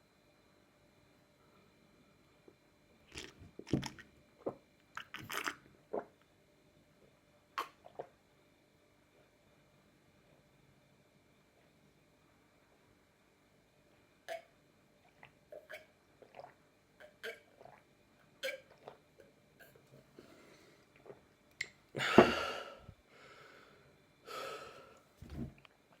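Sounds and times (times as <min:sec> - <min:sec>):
person gulping water: 0:03.1 - 0:06.2, 0:07.6 - 0:08.2, 0:15.1 - 0:17.8, 0:18.4 - 0:19.8, 0:22.0 - 0:22.9.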